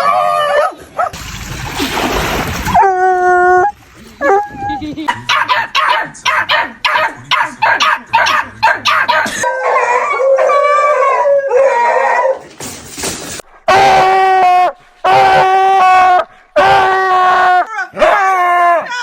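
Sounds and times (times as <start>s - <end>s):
dog barking rapidly: 5.1s - 9.8s
dog baying howl: 8.9s - 12.4s, 13.7s - 19.0s.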